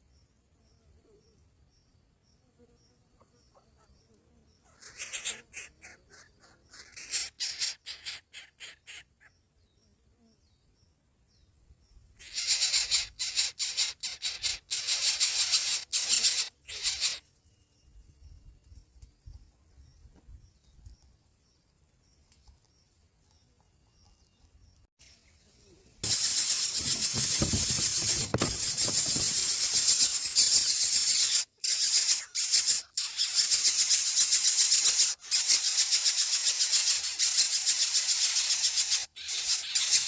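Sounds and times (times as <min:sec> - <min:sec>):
cicadas buzzing: 0:12.1 - 0:17.4, 0:26.0 - 0:40.0.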